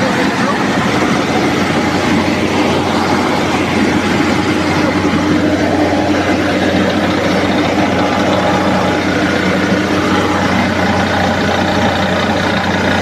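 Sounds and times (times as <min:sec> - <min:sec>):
constant low hum: 0:00.0 - 0:13.0
rice milling machine running: 0:00.0 - 0:13.0.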